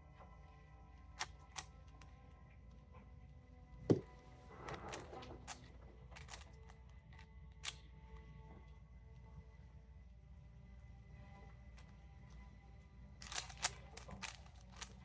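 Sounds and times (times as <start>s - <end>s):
plastic cube clicks: 1.2s - 1.7s, 4.9s - 7.9s, 13.2s - 15.0s.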